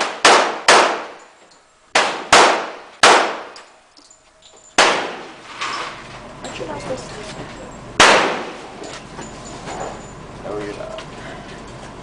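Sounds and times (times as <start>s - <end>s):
gunshots with ringing echo: 0.0s - 1.3s, 2.0s - 3.6s, 4.8s - 5.4s, 8.0s - 8.6s.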